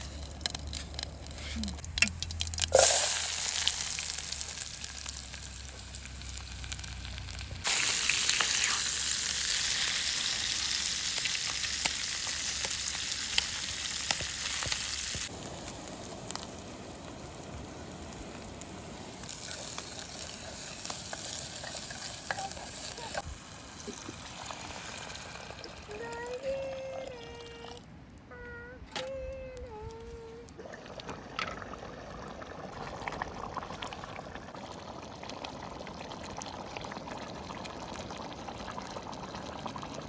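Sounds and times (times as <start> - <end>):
food frying in hot oil: 2.2 - 25.8.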